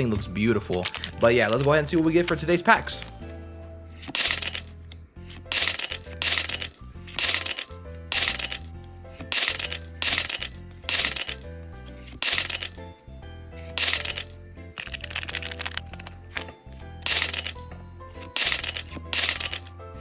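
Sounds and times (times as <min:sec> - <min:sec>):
quiet background music: 0:00.0 - 0:20.0
cards flipping swishes: 0:03.9 - 0:12.8, 0:14.8 - 0:19.8.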